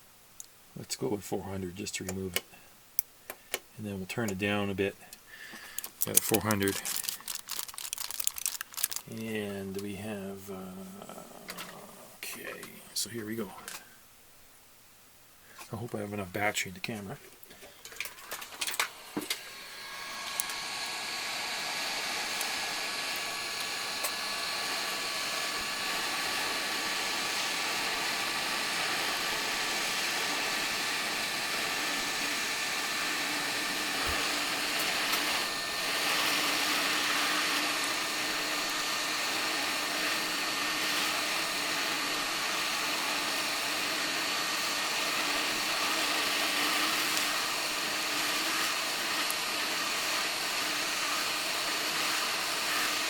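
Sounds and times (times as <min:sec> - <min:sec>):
hot air blower running: 0:18.6 - 0:53.0.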